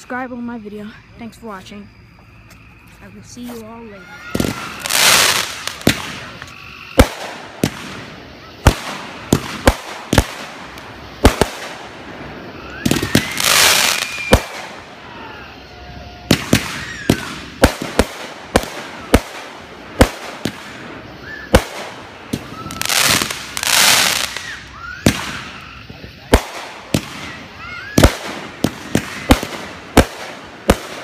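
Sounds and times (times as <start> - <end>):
firework rushing whistle: 0.0 - 31.0
fireworks bangs: 1.4 - 31.0.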